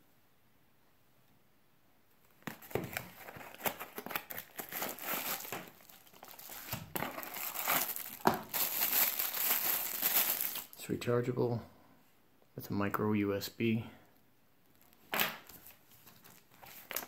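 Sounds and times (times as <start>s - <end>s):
packaging crinkling and rustling: 2.4s - 10.8s, 14.7s - 17.0s.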